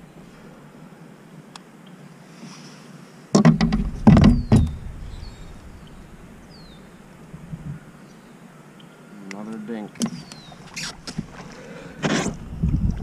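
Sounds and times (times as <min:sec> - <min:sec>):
thuds and knocks on kayak: 0:03.4 - 0:06.0.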